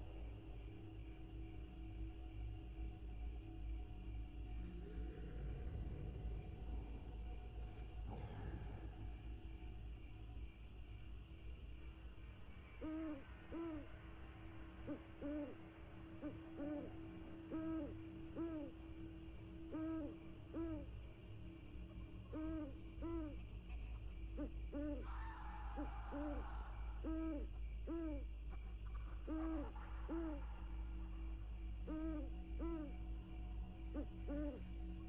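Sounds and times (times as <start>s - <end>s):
steady low hum: 0.0s - 35.0s
owl hooting: 12.6s - 20.9s, 22.2s - 35.0s.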